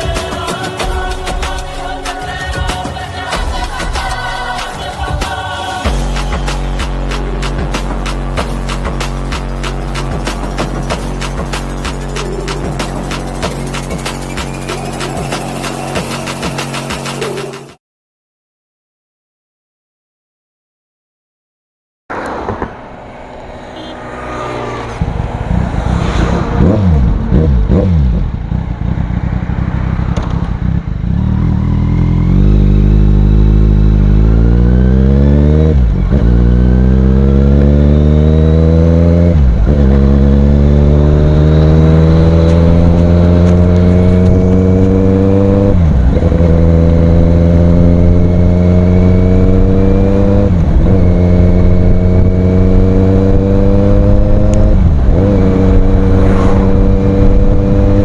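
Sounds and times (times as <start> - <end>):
motorcycle engine accelerating hard: 5.9 - 17.7, 22.1 - 58.0.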